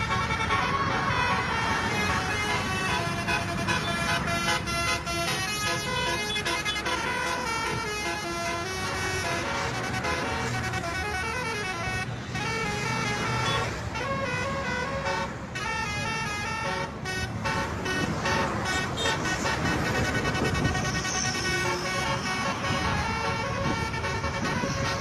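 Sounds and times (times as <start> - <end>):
bus air horn playing tune: 0.0 - 25.0
engine and road noise: 0.0 - 25.0.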